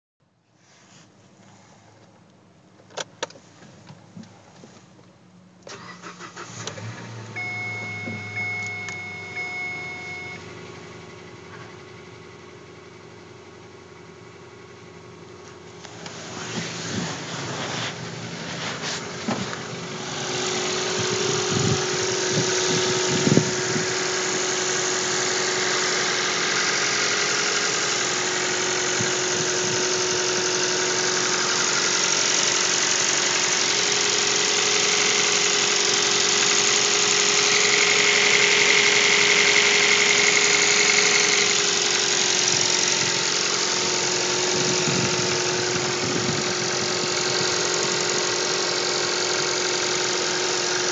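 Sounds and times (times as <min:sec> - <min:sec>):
car engine idling with knock: 0:07.8 - 0:08.6, 0:13.2 - 0:50.9.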